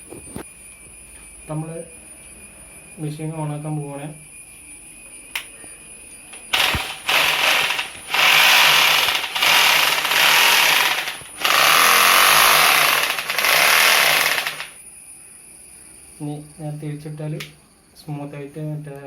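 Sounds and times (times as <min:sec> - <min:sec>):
rotary hammer drill rattling: 0:06.5 - 0:14.8.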